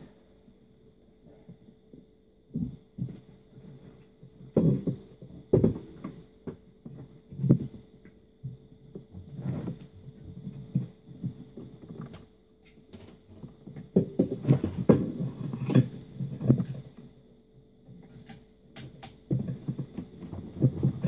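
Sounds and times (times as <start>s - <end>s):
faint steady hum: 0.0s - 21.0s
handling thumps and knocks: 2.5s - 7.8s, 8.4s - 17.0s.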